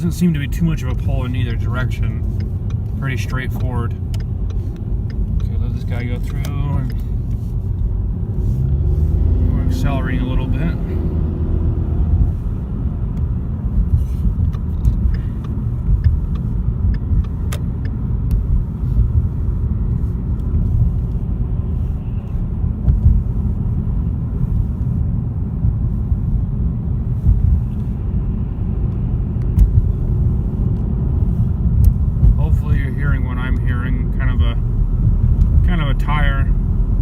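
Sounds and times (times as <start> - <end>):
road and tyre noise in car: 0.0 - 37.0.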